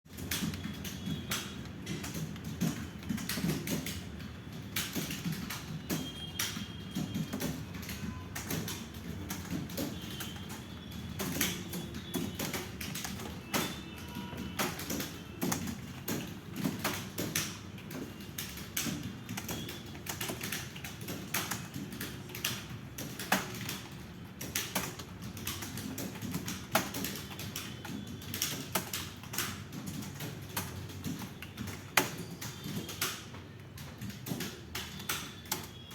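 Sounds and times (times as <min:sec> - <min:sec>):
keyboard typing: 0:00.1 - 0:35.9.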